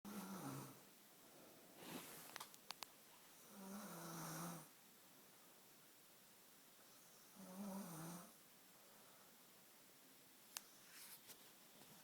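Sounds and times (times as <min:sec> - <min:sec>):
soft breath: 0:01.2 - 0:02.4.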